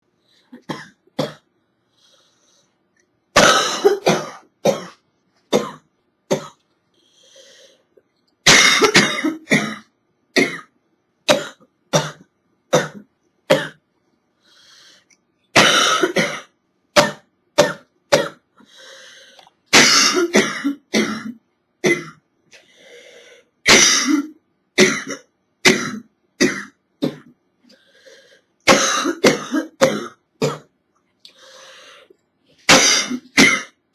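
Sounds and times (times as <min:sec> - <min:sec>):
girl hacking cough: 0:03.4 - 0:06.6, 0:08.5 - 0:10.7, 0:19.8 - 0:22.2, 0:28.7 - 0:30.7, 0:32.7 - 0:33.8.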